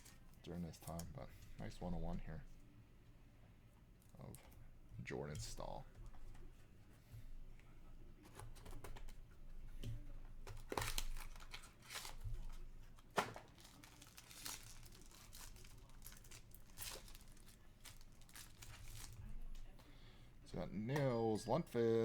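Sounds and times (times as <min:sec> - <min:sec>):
card wrappers crinkling and tearing: 0:10.4 - 0:19.4.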